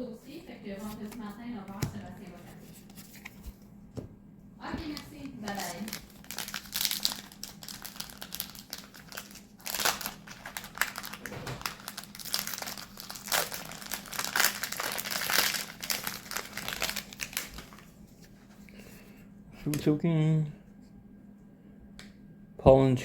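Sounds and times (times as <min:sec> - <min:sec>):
faint steady hum: 0:00.0 - 0:23.0
foil wrapper crinkling: 0:04.7 - 0:18.0.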